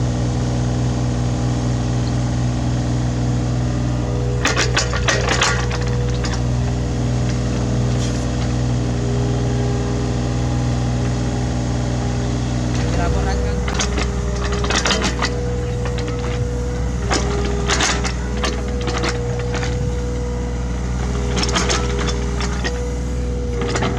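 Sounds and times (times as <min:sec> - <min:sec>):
mini excavator diesel engine: 0:00.0 - 0:23.9
clattering knocks: 0:04.4 - 0:08.6, 0:12.7 - 0:20.3, 0:21.0 - 0:22.9.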